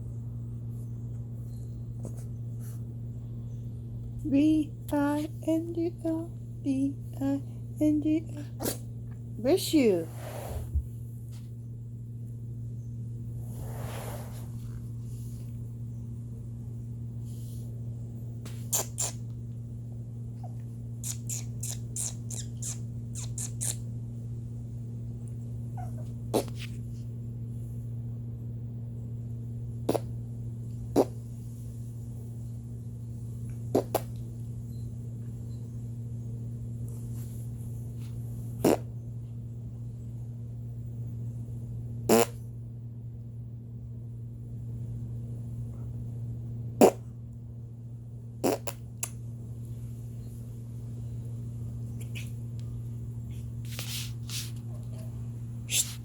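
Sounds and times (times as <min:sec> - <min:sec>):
steady low hum: 0:00.0 - 0:56.0
fart sound effects: 0:33.7 - 0:34.1, 0:38.6 - 0:38.9, 0:42.1 - 0:42.4, 0:46.8 - 0:47.0, 0:48.4 - 0:48.8.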